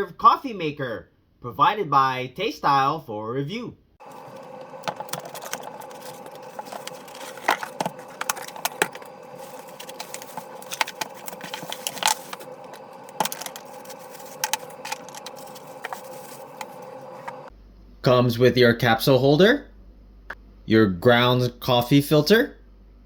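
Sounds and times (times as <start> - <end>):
steady hum: 4.0 - 17.8.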